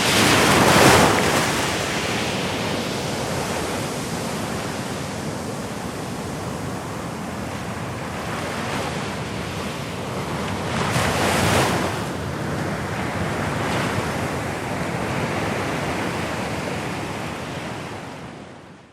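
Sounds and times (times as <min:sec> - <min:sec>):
large wave breaking: 0:00.0 - 0:05.4
ocean waves lapping on shore: 0:00.0 - 0:18.9.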